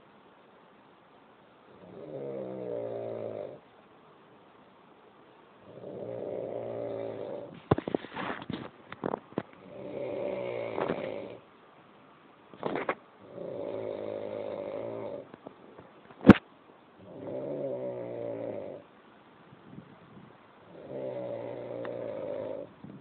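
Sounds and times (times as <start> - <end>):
rattling snores: 1.7 - 3.6, 5.6 - 7.6, 9.0 - 11.4, 12.6 - 15.3, 17.0 - 18.9, 20.7 - 22.8
sharp click: 16.1 - 16.5.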